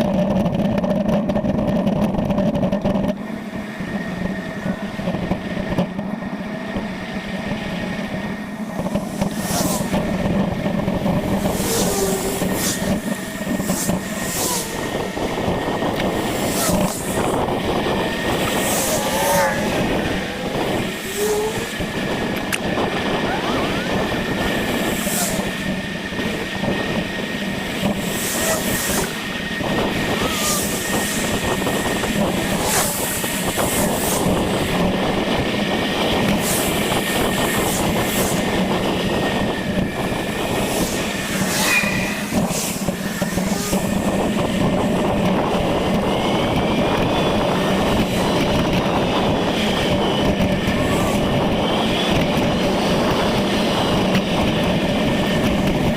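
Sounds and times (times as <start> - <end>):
air rushing past: 39.0 - 45.0.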